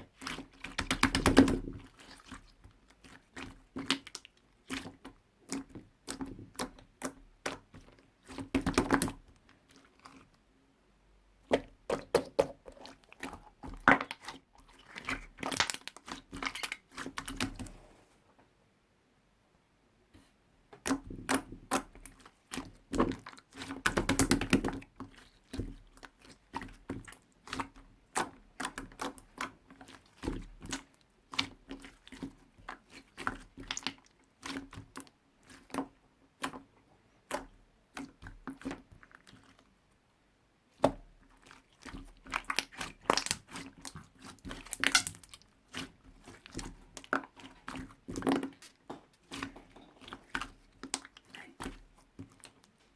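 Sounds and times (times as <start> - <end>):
sticky slime clicks and crackles: 42.4 - 45.9.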